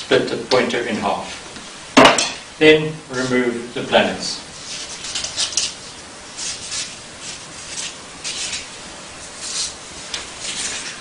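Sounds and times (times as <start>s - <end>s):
short scrapes and rustles: 4.6s - 11.0s.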